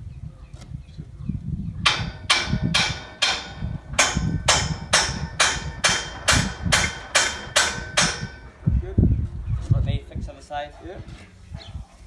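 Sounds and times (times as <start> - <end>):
hammer striking metal fitting: 1.9 - 8.6.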